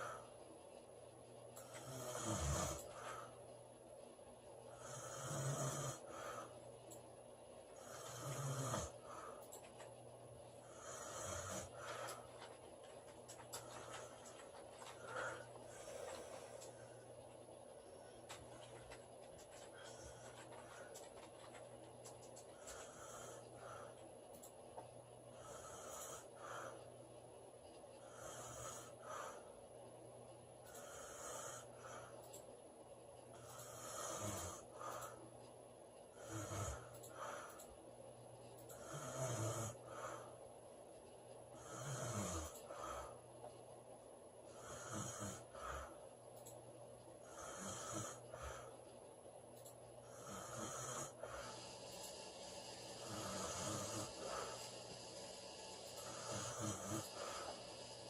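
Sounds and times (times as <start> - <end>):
woman snoring: 1.6 - 3.3, 4.7 - 6.5, 7.8 - 9.3, 10.6 - 12.2, 25.4 - 26.7, 28.0 - 29.4, 30.7 - 32.0, 33.4 - 35.1, 36.1 - 37.5, 38.7 - 40.2, 41.6 - 43.2, 44.5 - 45.9, 47.2 - 48.7, 50.0 - 58.0.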